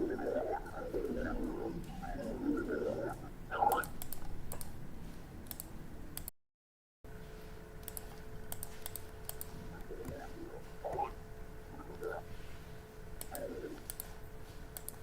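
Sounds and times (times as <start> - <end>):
stomach growling: 0.0 - 4.0, 9.6 - 12.4, 13.2 - 13.9.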